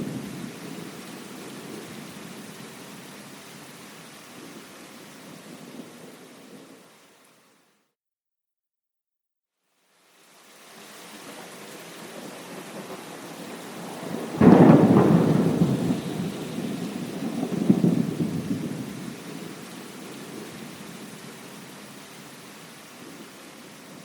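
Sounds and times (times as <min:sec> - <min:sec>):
steady rain: 0:00.0 - 0:07.9, 0:09.6 - 0:24.0
thunder clap and rumble: 0:12.1 - 0:21.1.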